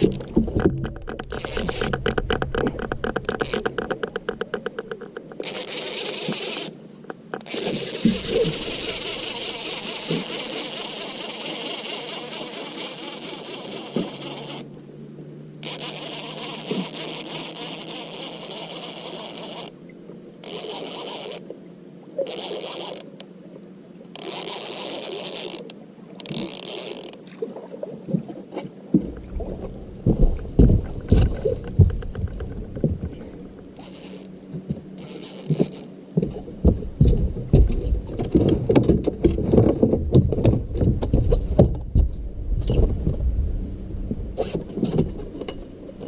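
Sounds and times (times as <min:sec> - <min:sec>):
knocks and scrapes on boat: 0:00.0 - 0:14.7, 0:28.2 - 0:43.4, 0:44.3 - 0:46.0
thuds and knocks: 0:30.1 - 0:33.3.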